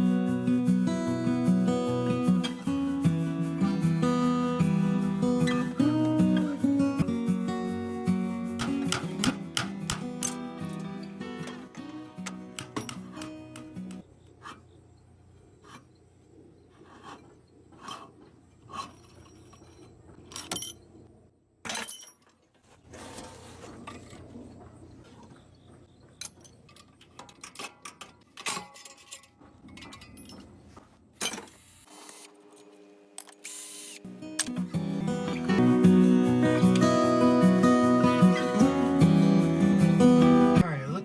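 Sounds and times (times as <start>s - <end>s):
metal tools clinking: 8.6s - 14.0s, 17.0s - 21.1s, 21.7s - 22.7s, 26.2s - 30.6s.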